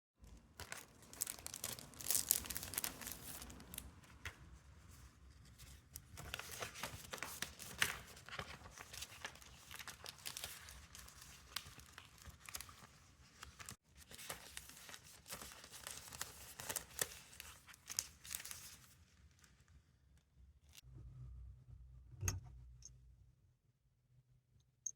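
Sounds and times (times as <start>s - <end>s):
packaging crinkling and tearing: 0.2s - 3.9s, 6.2s - 18.9s.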